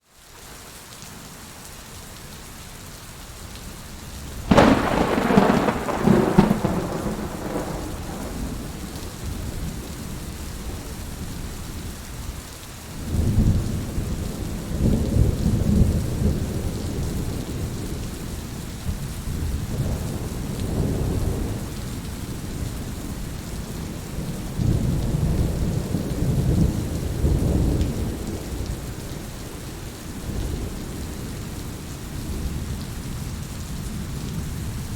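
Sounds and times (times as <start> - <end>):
steady rain: 0.0 - 34.9
thunder clap and rumbles: 4.5 - 11.6, 13.0 - 29.6.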